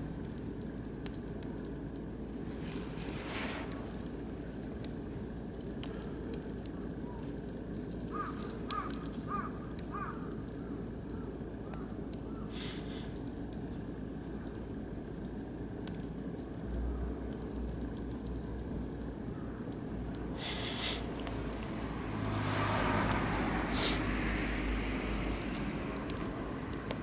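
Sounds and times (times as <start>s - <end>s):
fire hiss: 0.0s - 27.0s
wood fire crackling: 0.0s - 27.0s
bird calling: 8.1s - 10.3s.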